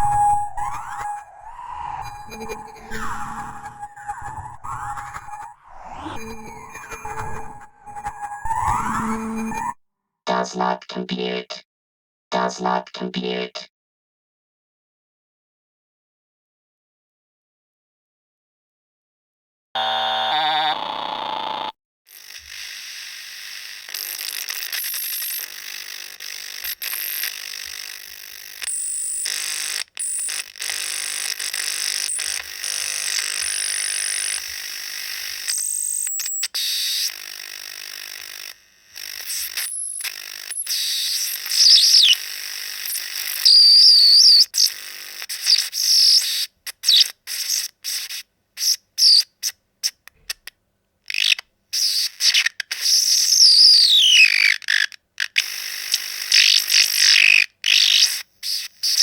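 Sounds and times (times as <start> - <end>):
steady high tones: 0.0 - 8.8.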